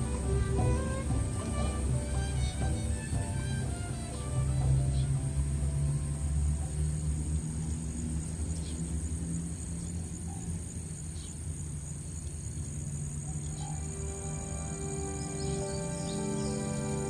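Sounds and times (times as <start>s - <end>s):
low rumble: 0.0s - 9.9s
insects buzzing: 0.0s - 17.0s.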